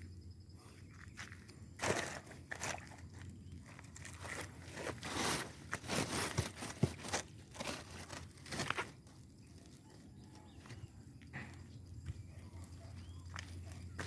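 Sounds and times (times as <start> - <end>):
dry leaves and twigs crunching: 0.9 - 14.0.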